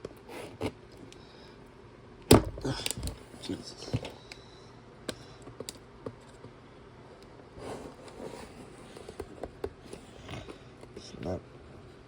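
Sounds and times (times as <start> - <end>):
clicks and taps on cardboard box: 9.0 - 9.8.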